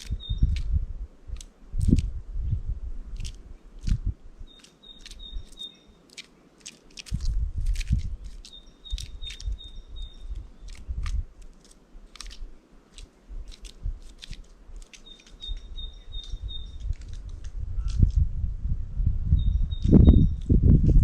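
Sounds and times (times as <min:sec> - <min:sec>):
birds pecking and cracking seeds: 0:00.0 - 0:02.2, 0:03.1 - 0:18.2.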